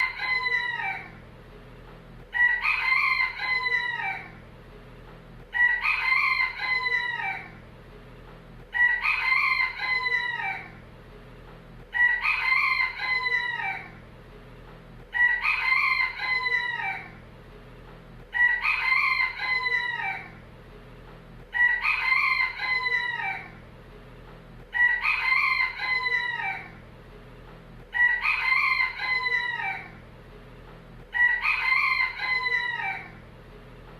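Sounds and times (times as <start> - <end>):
rooster crowing: 0.0 - 1.2, 2.3 - 4.4, 5.5 - 7.6, 8.7 - 10.8, 11.9 - 14.0, 15.1 - 17.2, 18.3 - 20.4, 21.5 - 23.6, 24.7 - 26.8, 27.9 - 30.0, 31.1 - 33.2.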